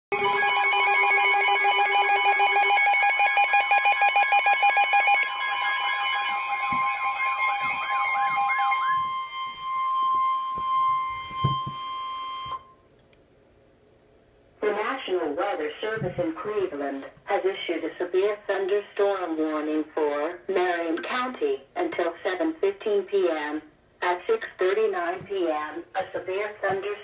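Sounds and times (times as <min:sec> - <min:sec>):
steady alarm tone: 0:00.1 - 0:12.8
fast pulsing beeps: 0:00.2 - 0:09.2
warbling alert tone: 0:05.0 - 0:10.1.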